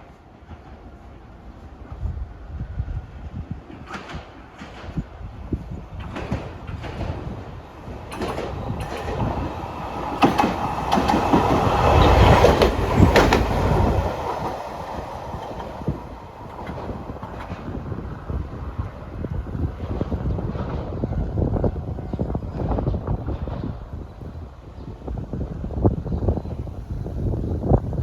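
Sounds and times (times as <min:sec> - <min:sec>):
tram rumbling past: 0:00.0 - 0:28.0.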